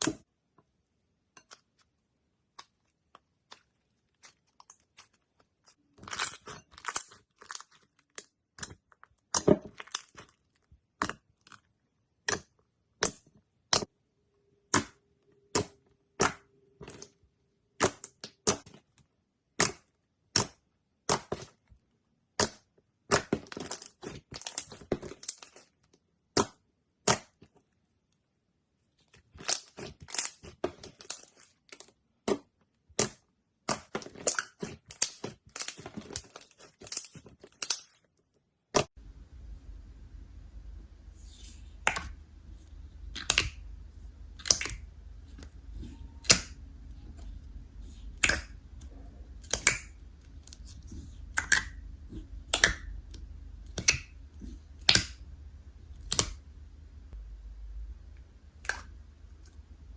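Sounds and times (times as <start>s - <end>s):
low steady hum: 39.0s - 59.9s
slime crackling: 39.6s - 56.6s
slime popping: 41.2s - 55.2s, 56.0s - 56.4s.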